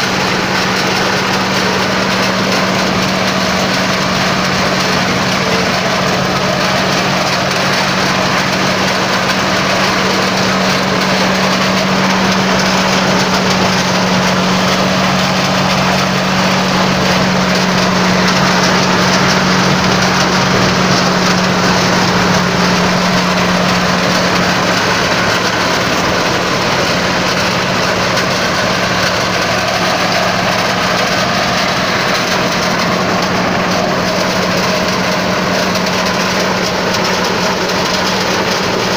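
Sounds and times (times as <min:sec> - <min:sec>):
corn thresher running: 0:00.0 - 0:38.9.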